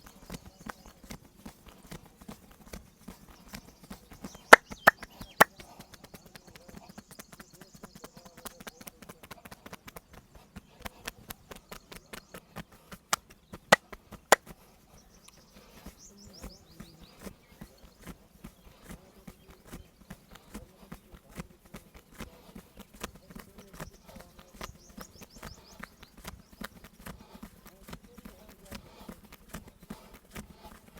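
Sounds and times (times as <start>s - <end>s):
hands slapping on a body: 0.2s - 7.4s, 10.8s - 14.6s.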